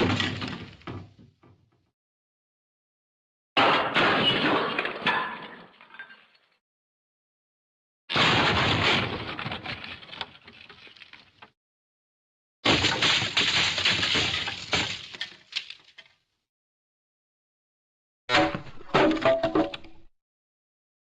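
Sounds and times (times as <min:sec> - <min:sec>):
loud breaking crash: 0:00.0 - 0:00.9, 0:03.6 - 0:05.7, 0:08.1 - 0:10.2, 0:12.6 - 0:15.3
debris clattering: 0:00.0 - 0:01.2, 0:12.7 - 0:16.1.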